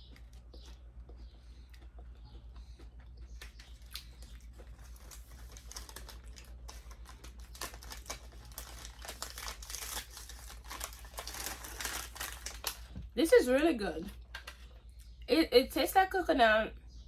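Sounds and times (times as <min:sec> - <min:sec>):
crunching and chewing crisp snacks: 0:00.0 - 0:13.1.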